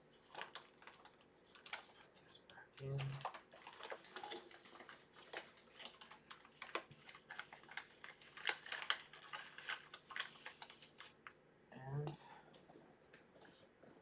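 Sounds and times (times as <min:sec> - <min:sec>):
parts and packaging handled: 0:00.1 - 0:02.1, 0:02.8 - 0:11.3.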